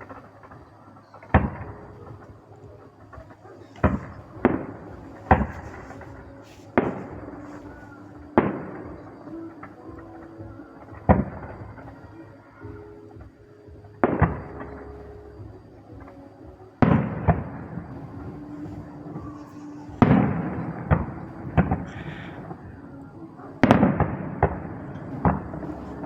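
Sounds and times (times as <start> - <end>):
fireworks booming: 0.0 - 23.0, 23.6 - 26.0
small firework pops: 3.1 - 9.3.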